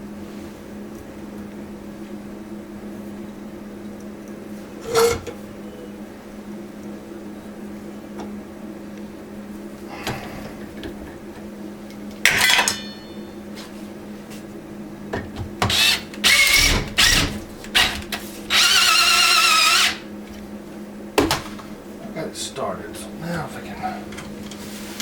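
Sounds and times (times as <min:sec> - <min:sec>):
steady low hum: 0:00.0 - 0:25.0
metal on metal screeching: 0:04.8 - 0:05.4.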